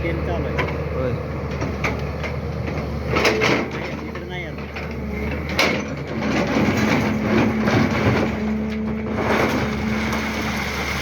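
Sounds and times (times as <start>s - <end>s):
excavator diesel engine running: 0.0s - 11.0s.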